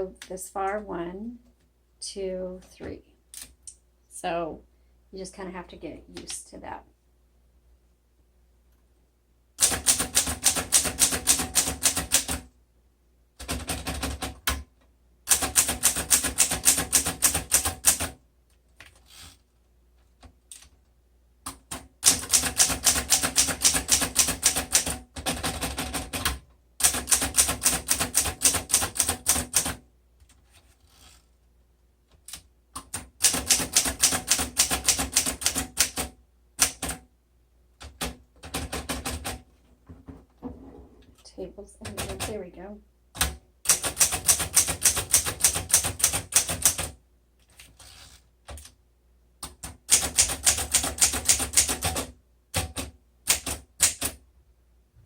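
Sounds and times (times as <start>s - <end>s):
manual typewriter keystrokes: 9.6s - 12.5s, 15.3s - 18.2s, 21.5s - 29.8s, 32.2s - 37.0s, 43.2s - 48.8s, 49.4s - 54.2s.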